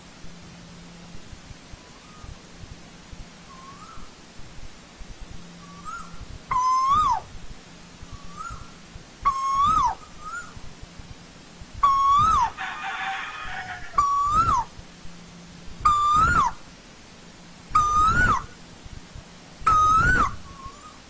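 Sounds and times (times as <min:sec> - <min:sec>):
fainter answering bird notes: 0:11.8 - 0:14.6.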